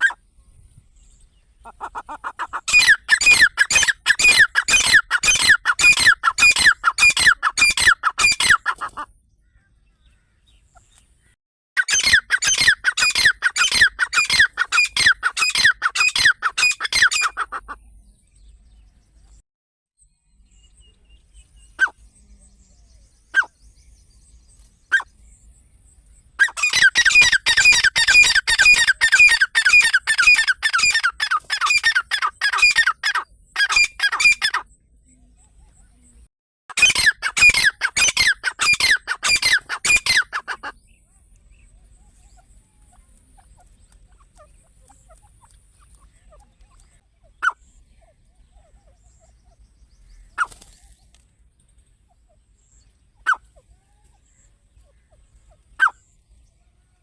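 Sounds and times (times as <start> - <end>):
partridge calling: 1.6 - 11.0, 11.8 - 17.9, 23.3 - 23.5, 24.9 - 25.1, 26.4 - 34.7, 36.7 - 40.9, 41.5 - 50.9, 52.0 - 56.2.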